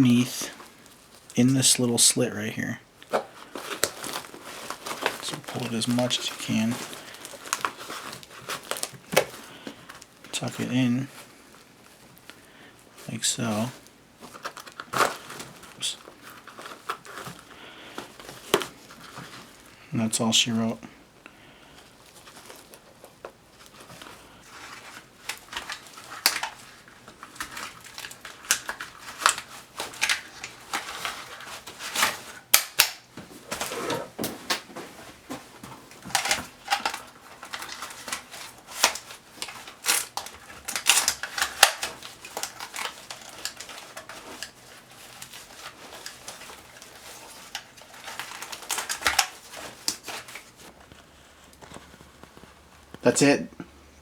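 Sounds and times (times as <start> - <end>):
webbing and plastic rustling: 0.0 - 54.0
clicks and knocks of handling: 22.0 - 53.0.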